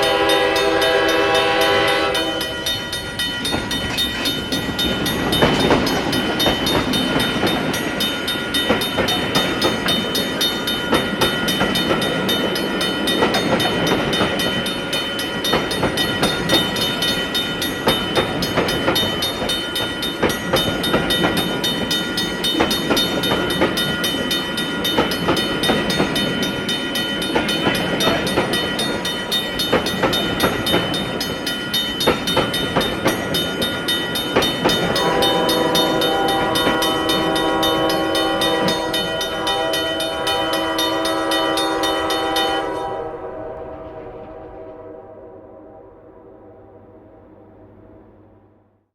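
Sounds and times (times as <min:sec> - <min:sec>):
train cars rolling past: 0:00.0 - 0:45.8
wheel clacks over rail joints: 0:02.7 - 0:40.2.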